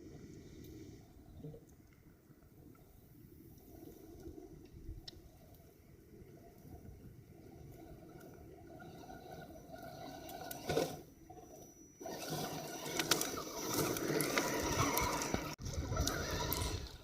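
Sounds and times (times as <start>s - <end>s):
toy truck electric motor whine: 8.7s - 17.0s.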